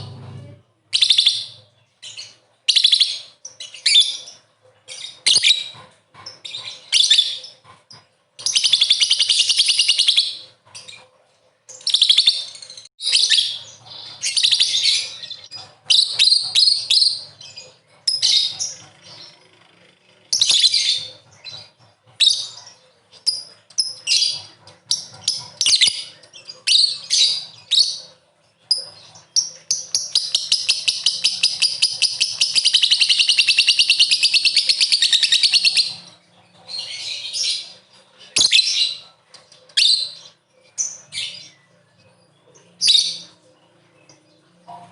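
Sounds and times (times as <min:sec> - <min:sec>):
lovebird chattering calls: 0:11.7 - 0:41.7
bird trilling: 0:11.8 - 0:44.5.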